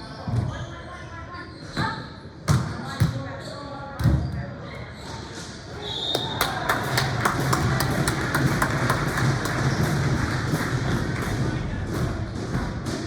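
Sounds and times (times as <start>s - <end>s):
crowd and arena din: 4.3s - 13.0s.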